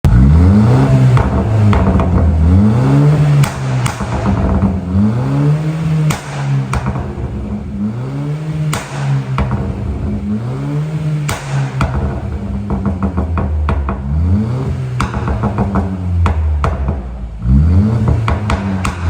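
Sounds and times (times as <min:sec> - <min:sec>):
car engine revving: 0:00.0 - 0:19.0
exhaust pops and crackles: 0:00.0 - 0:19.0.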